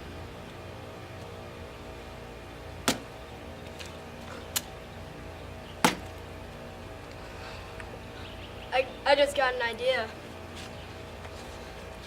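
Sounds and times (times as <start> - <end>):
metal pole stabbing watermelon: 2.8 - 3.1, 5.8 - 6.1.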